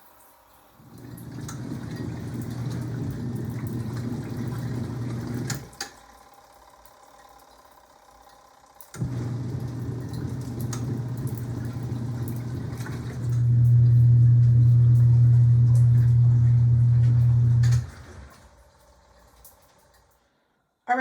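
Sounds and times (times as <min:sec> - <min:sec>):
washing machine motor humming: 0:00.8 - 0:20.4
water churning: 0:00.9 - 0:05.8, 0:09.0 - 0:20.1.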